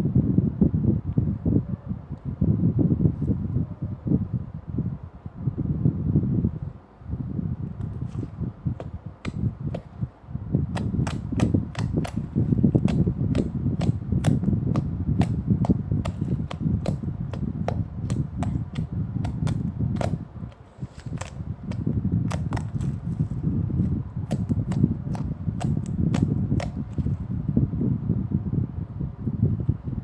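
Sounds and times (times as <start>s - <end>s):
slime squishing: 10.8s - 27.2s.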